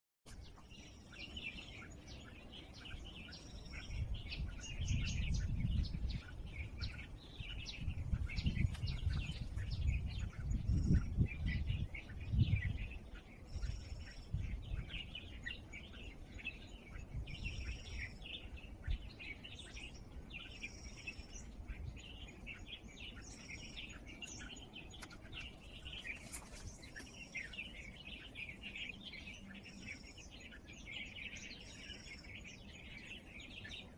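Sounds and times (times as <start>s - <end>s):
small birds chirping: 0.3s - 33.9s.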